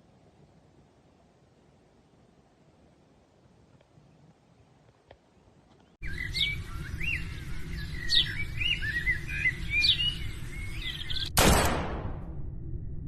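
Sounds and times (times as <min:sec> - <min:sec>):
small birds chirping: 0:05.2 - 0:11.3.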